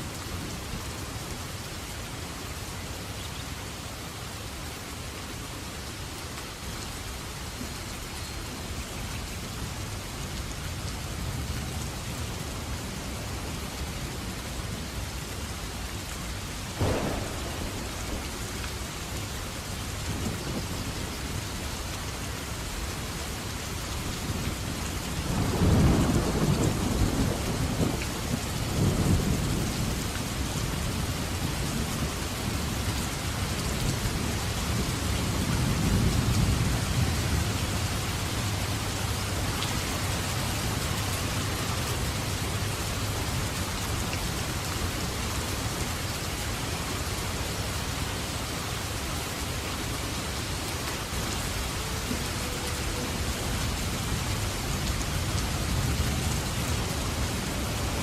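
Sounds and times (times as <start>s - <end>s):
heavy rain: 0.0s - 58.0s
rolling thunder: 16.8s - 20.8s, 25.3s - 32.0s.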